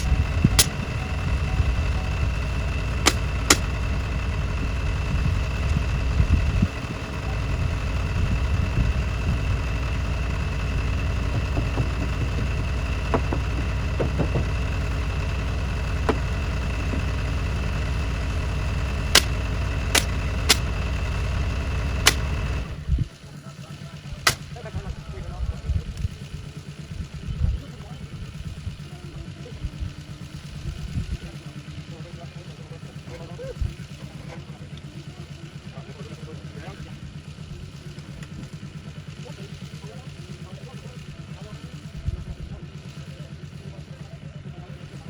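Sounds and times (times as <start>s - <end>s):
sharp clicks: 0.0s - 22.8s, 24.3s - 24.6s
car engine running: 0.0s - 45.0s.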